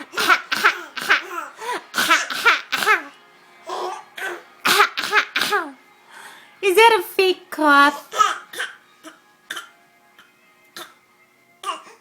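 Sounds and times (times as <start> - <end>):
child fake coughing: 0.0 - 3.1, 3.7 - 5.8, 8.1 - 9.7, 11.6 - 12.0.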